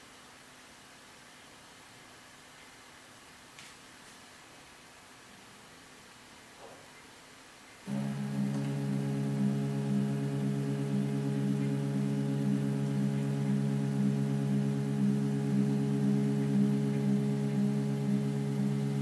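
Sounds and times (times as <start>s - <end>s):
stepper motors humming: 7.9s - 19.0s.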